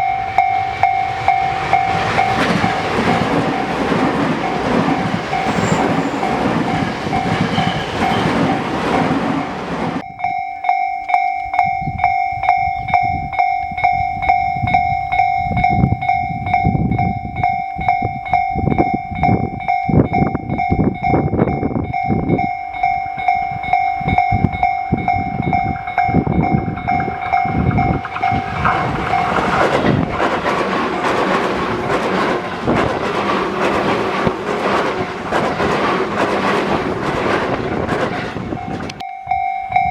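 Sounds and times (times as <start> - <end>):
train wheels clattering over rail joints: 0.0 - 10.0, 23.4 - 39.0
rushing noise of passing train: 0.0 - 10.1, 11.8 - 39.9
level crossing warning bell: 0.0 - 39.9.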